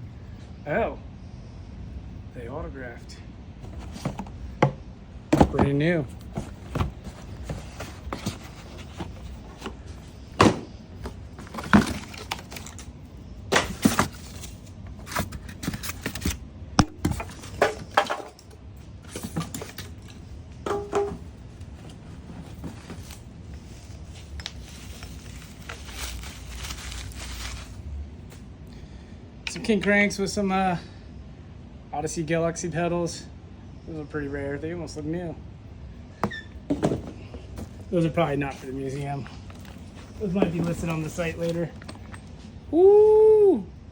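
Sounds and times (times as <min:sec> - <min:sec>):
metal parts knocking and clinking: 0:40.4 - 0:42.4.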